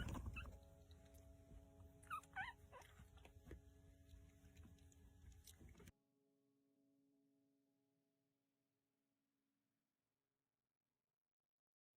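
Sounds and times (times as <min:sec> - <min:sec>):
puppy whimpering squeaks: 0:00.0 - 0:00.6, 0:02.0 - 0:03.1
low hum: 0:00.0 - 0:05.9.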